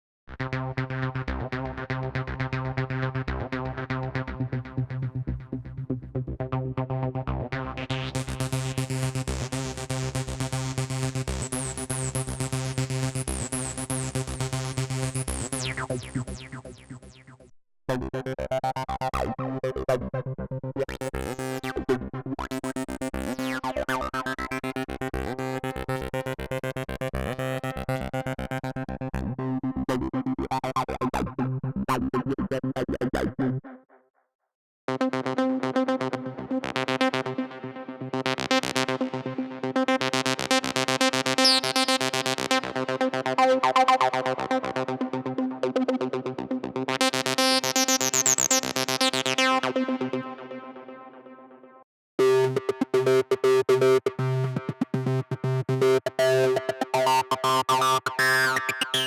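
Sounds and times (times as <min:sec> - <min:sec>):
acid bass synthesizer patterns: 0:01.2 - 0:33.4, 0:52.2 - 0:59.0.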